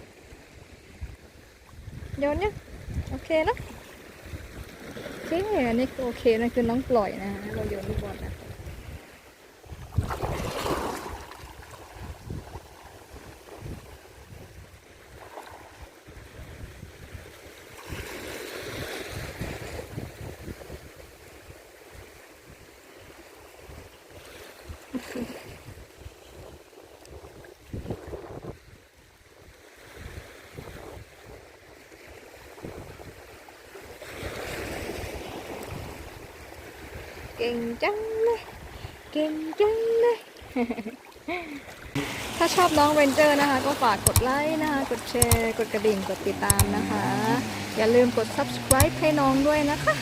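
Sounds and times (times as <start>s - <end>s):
sea waves washing onto beach: 0.0s - 27.9s, 29.4s - 50.0s
wind buffeting microphone: 0.9s - 18.0s, 18.7s - 21.1s, 25.6s - 28.8s, 32.5s - 33.4s, 41.8s - 50.0s
surf washing on beach: 29.4s - 50.0s.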